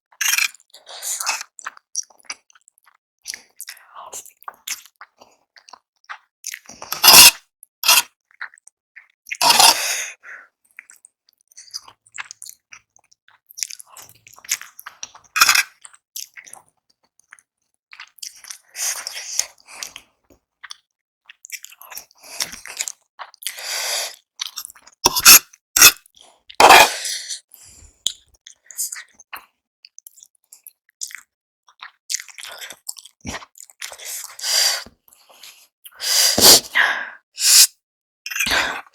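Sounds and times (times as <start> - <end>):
person chewing and biting food: 0.1 - 10.0, 10.8 - 16.6, 17.2 - 20.0, 20.6 - 27.1, 28.0 - 36.8, 38.3 - 38.9.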